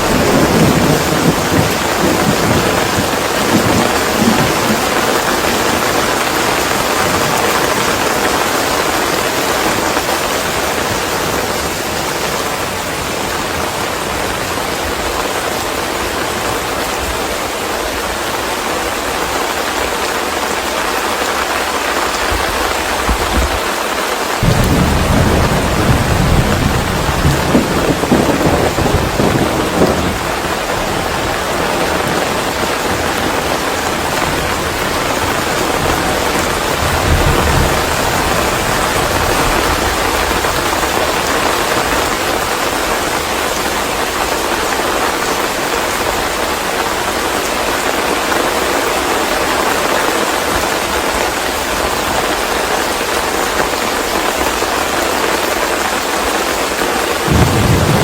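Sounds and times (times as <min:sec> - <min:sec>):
low rumbling thunder: 0:00.0 - 0:08.4, 0:24.4 - 0:43.4, 0:57.3 - 0:58.0
steady rain: 0:00.0 - 0:58.0.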